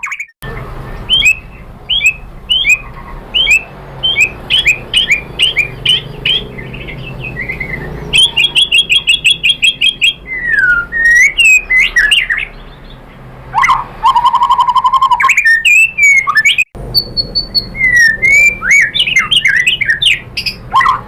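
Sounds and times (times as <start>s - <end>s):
songbird singing: 0.0s - 21.0s.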